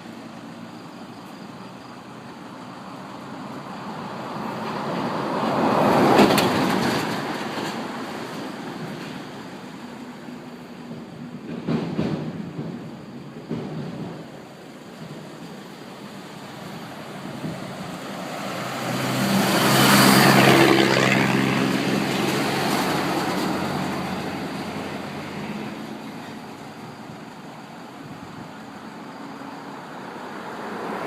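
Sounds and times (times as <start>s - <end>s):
vehicle engine and tyre noise passing: 0.0s - 11.1s, 14.2s - 31.0s.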